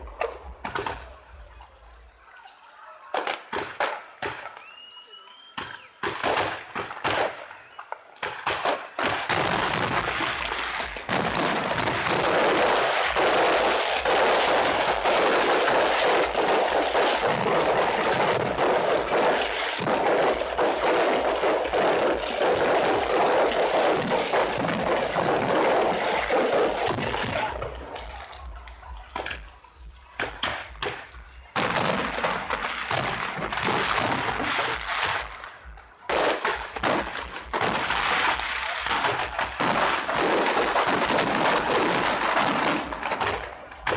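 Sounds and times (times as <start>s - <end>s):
fireworks bangs and crackling: 0.0s - 43.9s.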